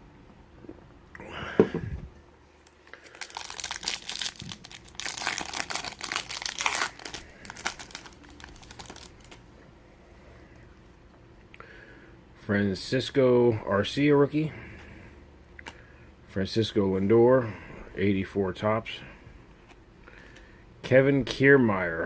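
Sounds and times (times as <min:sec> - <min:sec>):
foil wrapper crinkling: 0:02.6 - 0:09.4.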